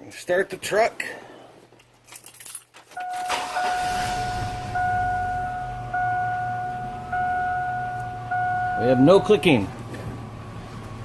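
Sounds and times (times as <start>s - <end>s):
dashboard warning chime: 3.0s - 9.7s
truck engine starting and idling: 3.0s - 11.0s.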